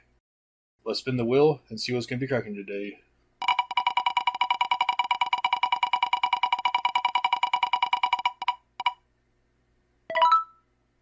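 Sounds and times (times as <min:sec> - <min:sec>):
spinning wheel ticking: 0:03.4 - 0:09.0.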